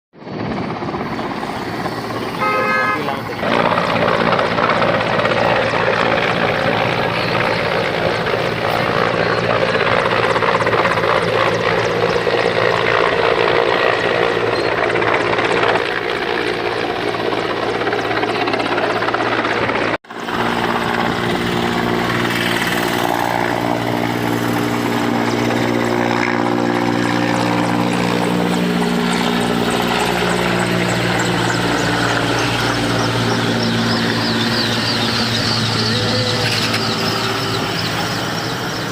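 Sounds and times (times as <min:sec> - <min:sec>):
helicopter rotor and engine: 0:00.2 - 0:38.9
steady low drone: 0:20.1 - 0:38.9.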